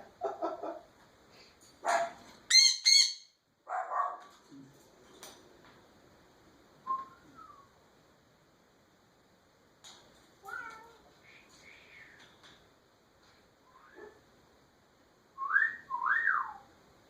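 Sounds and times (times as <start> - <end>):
parrot squawking: 2.5 - 3.3.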